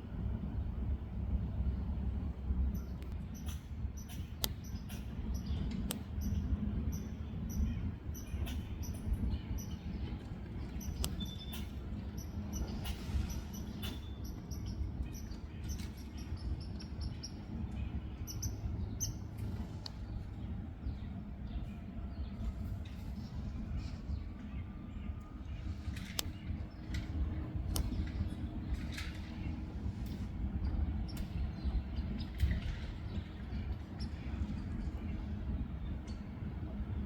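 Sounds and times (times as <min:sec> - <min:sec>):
low rumble: 0:00.0 - 0:37.0.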